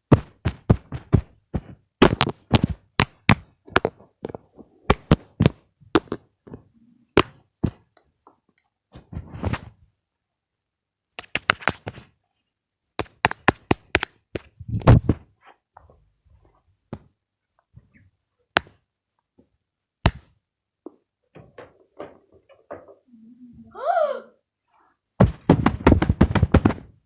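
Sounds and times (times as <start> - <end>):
heavy thud: 25.2 - 27.0.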